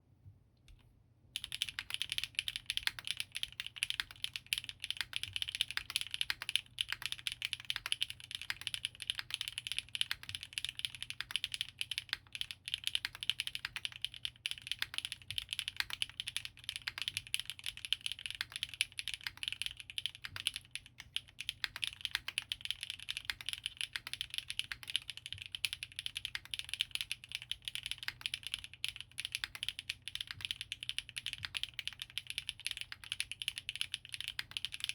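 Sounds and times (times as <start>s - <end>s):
fast typing on mechanical keyboard: 1.4s - 34.9s.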